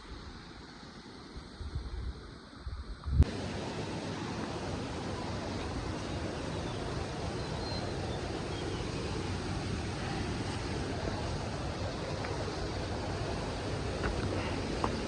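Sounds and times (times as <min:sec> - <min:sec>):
waterfall roaring: 0:03.2 - 0:15.0.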